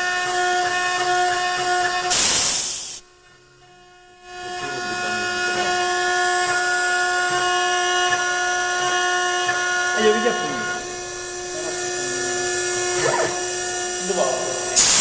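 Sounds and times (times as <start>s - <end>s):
machine spindle whine: 0.0s - 2.2s, 3.7s - 15.0s
loud hiss: 2.1s - 3.0s, 14.7s - 15.0s.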